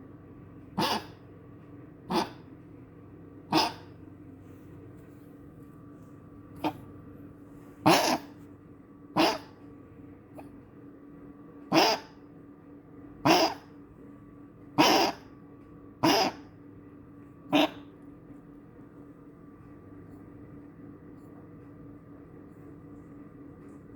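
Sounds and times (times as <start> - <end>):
faint steady hum: 0.0 - 23.9
dog coughing: 0.8 - 1.2, 2.1 - 2.4, 3.5 - 4.0, 6.6 - 6.9, 7.8 - 8.4, 9.2 - 9.6, 11.7 - 12.2, 13.2 - 13.7, 14.8 - 15.3, 16.0 - 16.5, 17.5 - 17.9.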